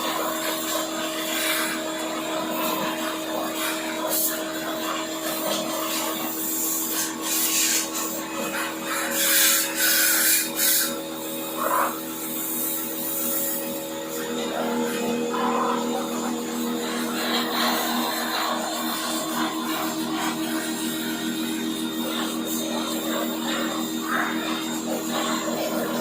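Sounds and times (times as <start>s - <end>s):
steady hum: 11.4s - 26.0s
scrubbing and rubbing: 14.1s - 26.0s.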